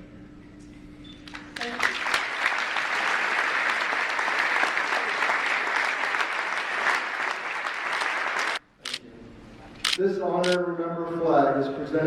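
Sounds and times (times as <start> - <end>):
large audience applauding: 1.3 - 8.6.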